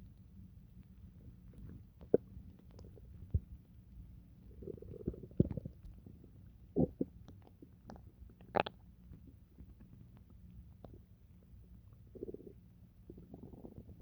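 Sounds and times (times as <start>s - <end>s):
stomach gurgling: 4.5s - 6.2s, 6.8s - 11.1s, 12.0s - 14.0s.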